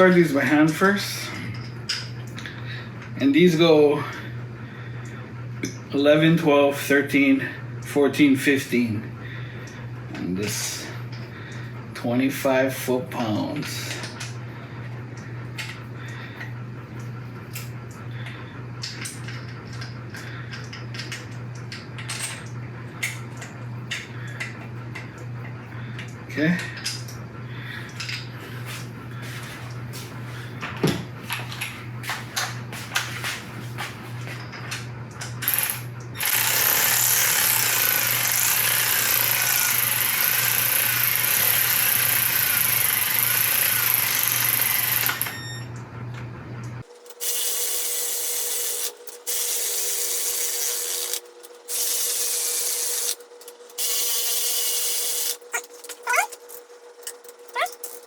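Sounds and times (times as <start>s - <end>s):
power tool whining: 35.4s - 45.6s.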